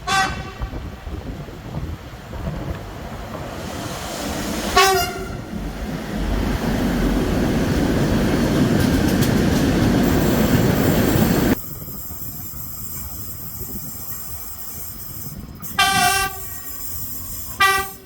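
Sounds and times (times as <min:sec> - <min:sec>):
train horn blast: 0:00.0 - 0:00.8, 0:04.8 - 0:05.5, 0:15.7 - 0:18.0
train passing close by: 0:00.0 - 0:18.0.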